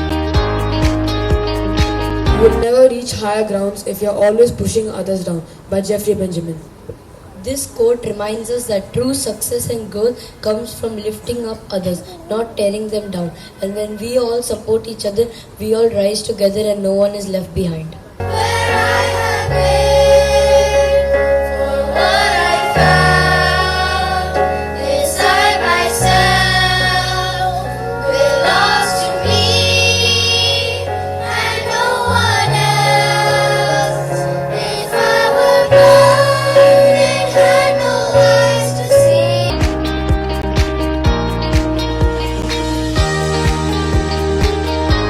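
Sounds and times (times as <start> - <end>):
held bass notes: 0.0 - 2.7, 18.2 - 45.0
instrumental accompaniment: 0.0 - 2.7, 18.2 - 45.0
children singing: 18.2 - 39.5.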